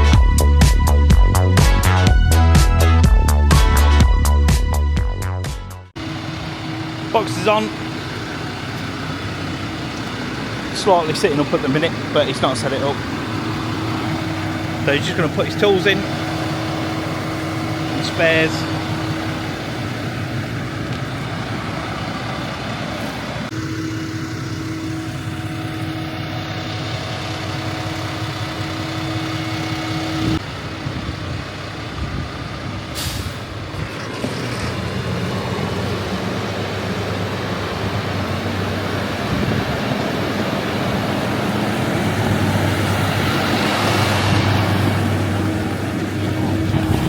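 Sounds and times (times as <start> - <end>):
tractor engine running: 0.0 - 5.3, 5.9 - 47.0.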